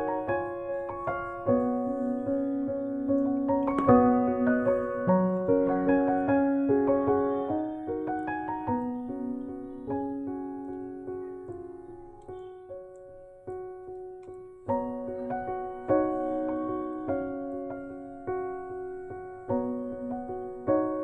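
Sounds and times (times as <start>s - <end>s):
gentle piano melody: 0.0s - 21.0s
piano chord struck: 0.0s - 21.0s.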